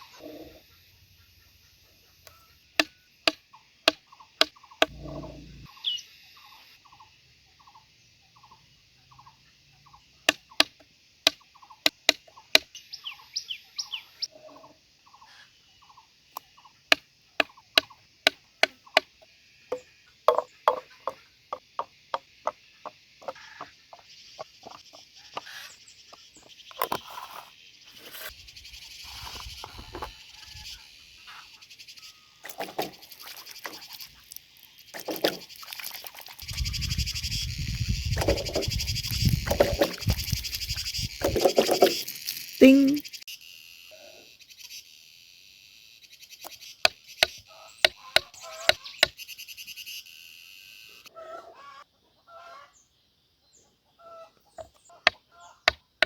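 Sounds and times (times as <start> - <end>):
sharp knocks and clicks: 16.9 - 25.0.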